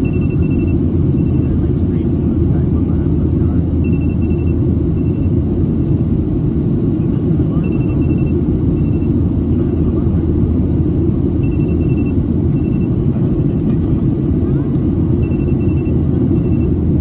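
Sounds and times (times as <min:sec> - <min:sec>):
faint high pulsing tone: 0:00.0 - 0:01.6, 0:03.8 - 0:05.4, 0:07.5 - 0:09.2, 0:11.4 - 0:13.0, 0:15.2 - 0:16.9
airplane cabin engine rumble: 0:00.0 - 0:17.0.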